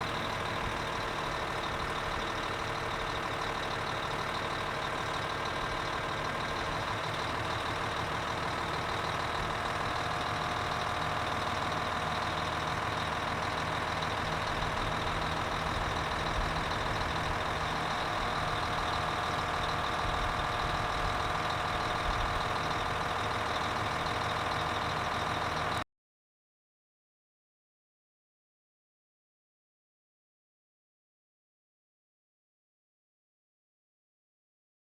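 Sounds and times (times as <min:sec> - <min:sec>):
bus diesel engine idling: 0:00.0 - 0:25.8.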